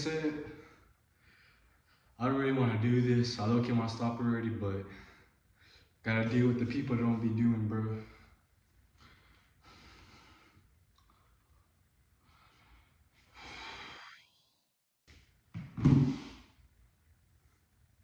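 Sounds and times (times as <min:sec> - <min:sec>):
man breathing hard: 0:00.5 - 0:02.2, 0:08.0 - 0:11.4, 0:12.2 - 0:14.4.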